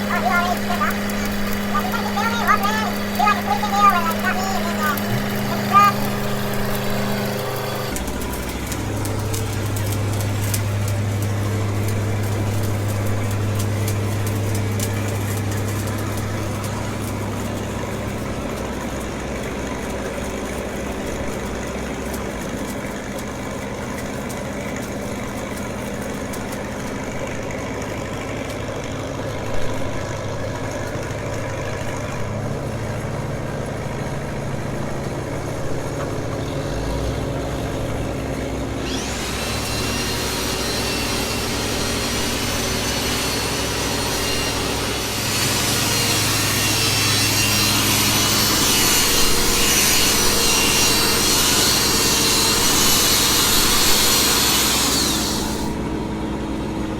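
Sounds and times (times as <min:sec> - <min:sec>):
welding arc crackling: 0:00.0 - 0:28.1, 0:32.4 - 0:56.0
welding machine engine running: 0:00.0 - 0:56.9.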